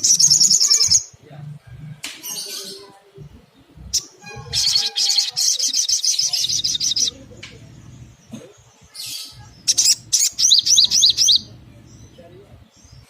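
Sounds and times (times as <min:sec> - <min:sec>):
bird high-pitched trill: 0:00.0 - 0:01.1, 0:03.7 - 0:07.2, 0:08.9 - 0:12.2
bird sharp chirps: 0:03.6 - 0:13.0.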